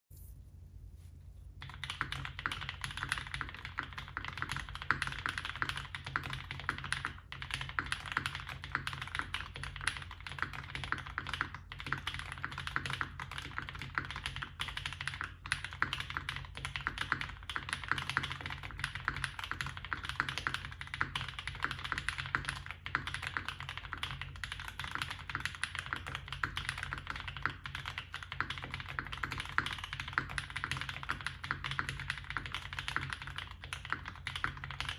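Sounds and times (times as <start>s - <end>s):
faint low hum: 0.0s - 4.7s
mechanical keyboard typing: 1.6s - 34.9s.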